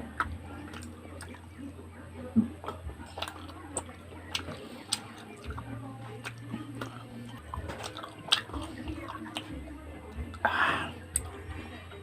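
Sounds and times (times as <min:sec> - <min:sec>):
chewing and wet mouth noises: 0:00.0 - 0:12.0.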